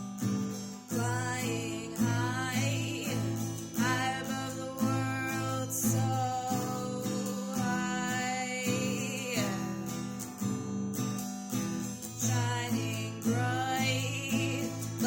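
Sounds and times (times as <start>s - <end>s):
acoustic guitar strumming: 0.0s - 15.0s
person singing: 0.9s - 9.9s, 12.1s - 15.0s.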